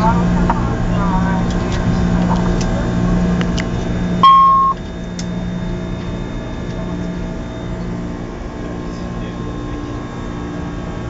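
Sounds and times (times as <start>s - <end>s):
aircraft cockpit hum: 0.0s - 11.0s
loud electronic beep: 4.2s - 4.8s.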